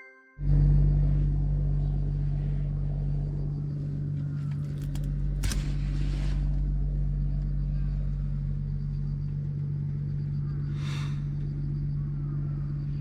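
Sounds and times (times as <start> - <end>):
van engine drone: 0.4 - 13.0
light clicks: 3.8 - 6.4.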